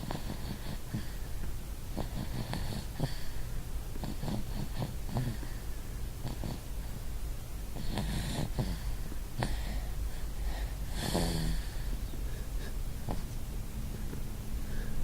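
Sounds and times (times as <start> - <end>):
person snoring and snorting: 4.0 - 5.4, 7.8 - 9.7, 10.9 - 11.8.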